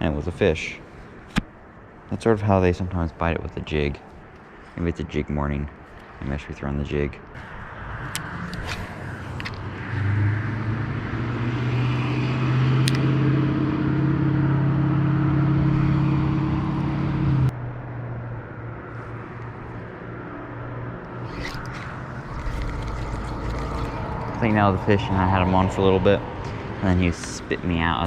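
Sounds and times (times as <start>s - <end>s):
vehicle engine humming: 7.2s - 28.0s.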